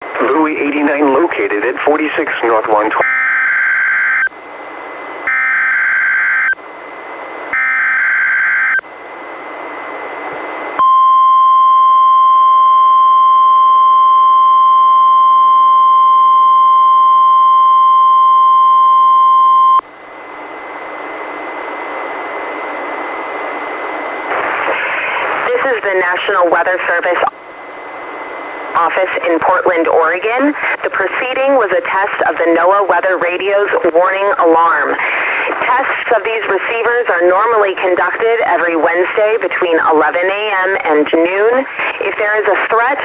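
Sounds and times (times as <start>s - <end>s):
radio hiss: 0.0s - 3.0s, 24.2s - 27.3s, 28.5s - 43.0s
steady warning alarm tone: 3.0s - 9.6s, 10.8s - 19.9s.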